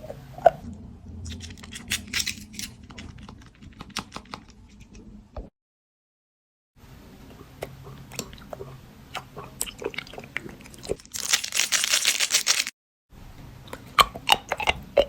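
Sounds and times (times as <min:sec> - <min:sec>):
crunching and chewing sweets: 0:01.2 - 0:04.9, 0:09.4 - 0:12.7, 0:13.7 - 0:15.0.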